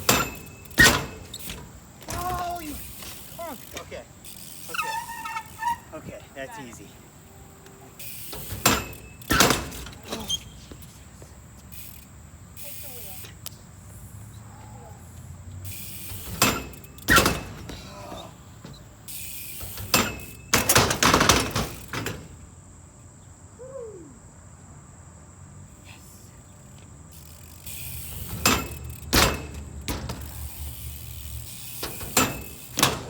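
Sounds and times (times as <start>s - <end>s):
bike landing knocks and clanks: 0.0s - 4.0s, 8.2s - 10.9s, 16.0s - 22.4s, 27.4s - 33.0s
bike tyres rolling on concrete: 0.0s - 22.6s, 25.8s - 33.0s.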